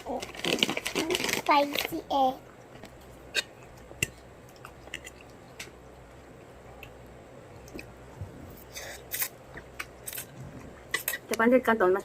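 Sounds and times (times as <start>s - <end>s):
wet chewing and smacking: 3.3s - 8.0s.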